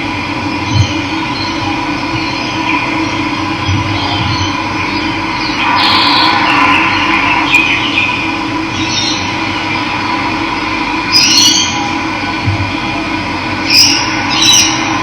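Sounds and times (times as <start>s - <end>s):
birds chirping: 2.2s - 9.8s.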